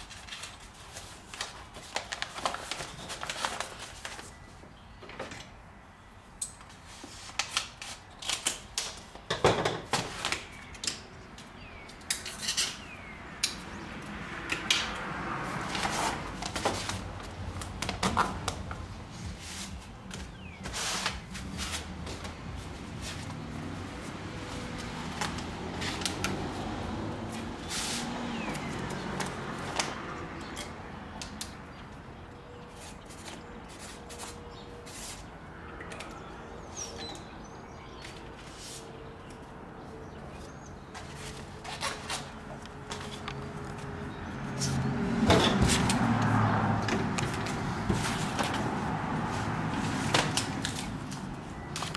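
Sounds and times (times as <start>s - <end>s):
objects clattering on work surface: 9.3s - 10.3s.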